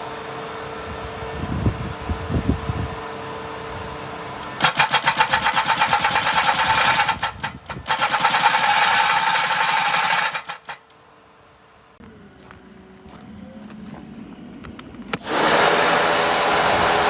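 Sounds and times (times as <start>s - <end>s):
rapid rhythmic hammering: 4.6s - 10.9s
electric-hydraulic hum: 12.0s - 17.0s.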